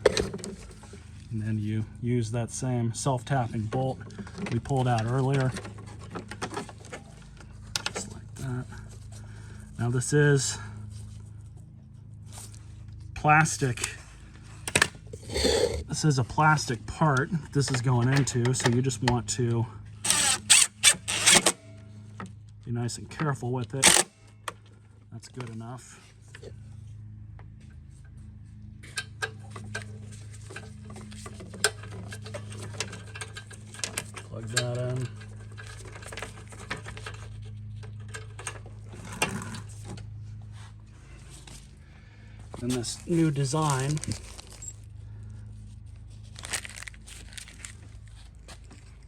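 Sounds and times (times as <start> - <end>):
steady low hum: 0.0 - 49.0
sharp clicks of cable parts: 20.0 - 21.6, 23.7 - 24.7.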